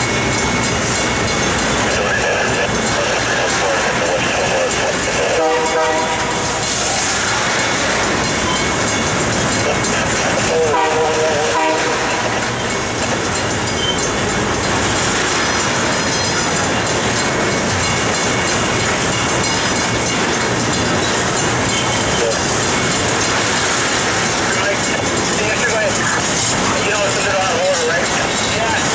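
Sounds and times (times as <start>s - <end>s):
freight train rumble and wheel clatter: 0.0s - 28.9s
locomotive horn blasts: 5.2s - 6.7s, 10.4s - 12.6s.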